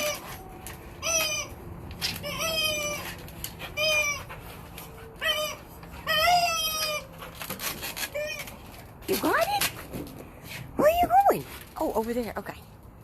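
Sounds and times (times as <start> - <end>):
dog making squawky cries: 0.0 - 8.8.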